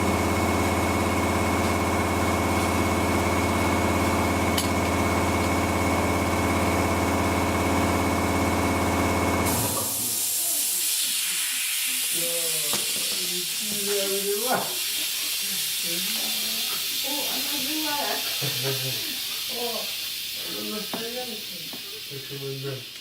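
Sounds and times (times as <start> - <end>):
mechanical hum with high whine: 0.0 - 10.7
hiss of rushing air: 9.4 - 23.0.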